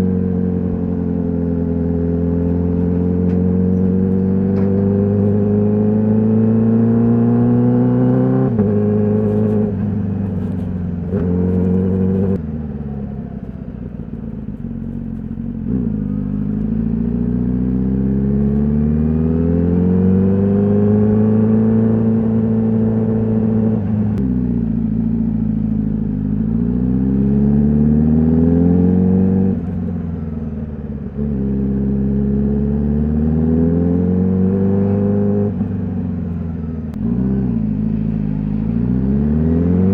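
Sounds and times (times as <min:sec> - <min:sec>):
motorcycle engine accelerating: 0:00.0 - 0:39.9
exhaust cracks at gear shifts: 0:08.0 - 0:16.8.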